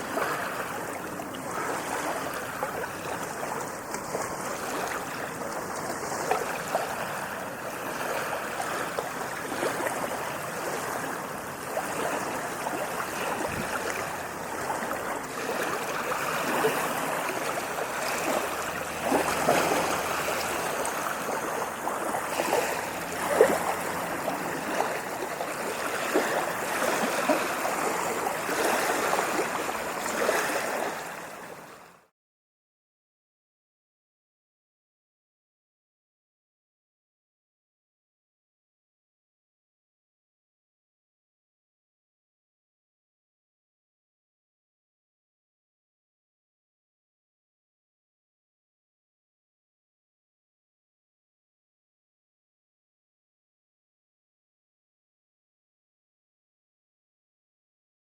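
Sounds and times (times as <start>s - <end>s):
water splashes: 0.0s - 32.0s
water babbling and gurgling: 0.0s - 32.1s.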